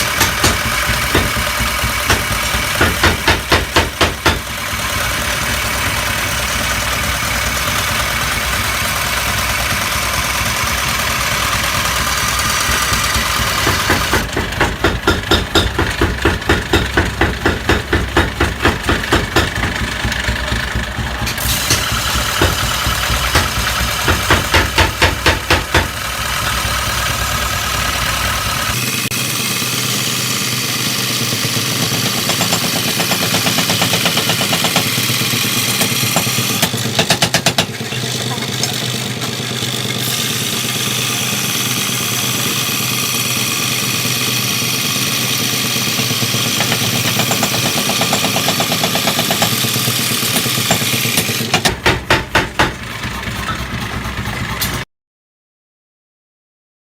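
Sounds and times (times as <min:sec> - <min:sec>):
workshop machine motor running: 0:00.0 - 0:54.8.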